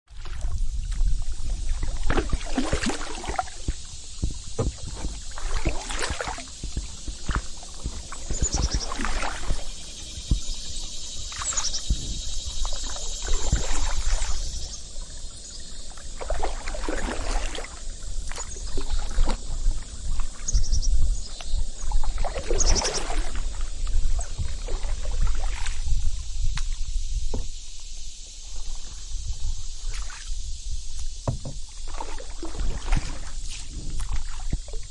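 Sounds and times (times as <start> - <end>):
canoe paddle swishing through water: 0.0 - 34.9
insects droning: 0.1 - 34.9
bird chirps: 9.8 - 13.5.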